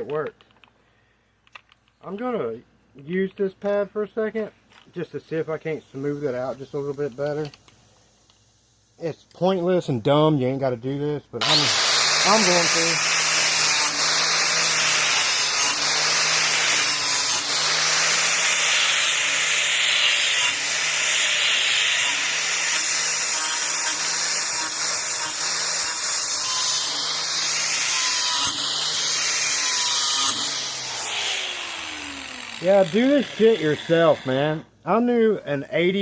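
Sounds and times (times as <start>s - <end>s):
power tool motor hum: 11.4s - 34.6s.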